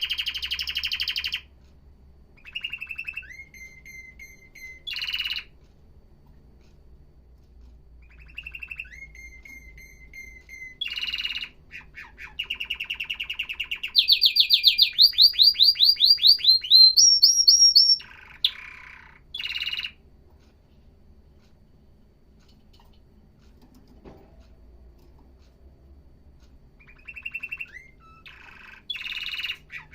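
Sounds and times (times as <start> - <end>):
canary singing rapid trills: 0.0 - 1.5, 2.4 - 5.6, 8.0 - 20.0, 26.8 - 29.9.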